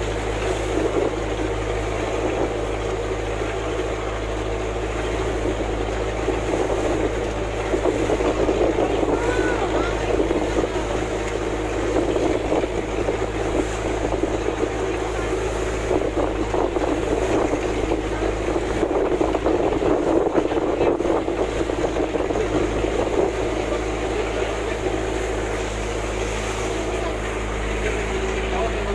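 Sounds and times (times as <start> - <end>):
low motor drone: 0.0 - 28.9
sea waves washing ashore: 0.0 - 28.9
wind on microphone: 5.4 - 25.0.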